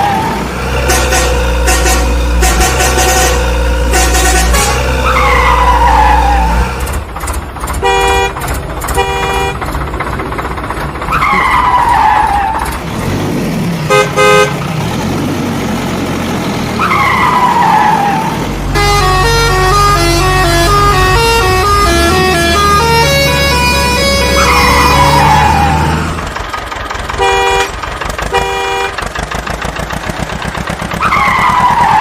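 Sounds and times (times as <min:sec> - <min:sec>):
horn honks: 0:00.8 - 0:06.5, 0:07.8 - 0:09.8, 0:13.9 - 0:14.6, 0:18.7 - 0:26.2, 0:27.1 - 0:29.2
low engine rumble: 0:06.8 - 0:16.8.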